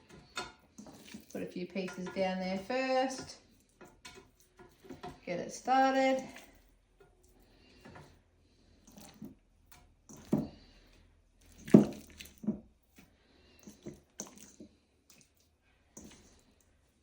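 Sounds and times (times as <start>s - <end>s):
raw meat squelching and thudding: 0.0s - 2.3s, 8.8s - 16.6s.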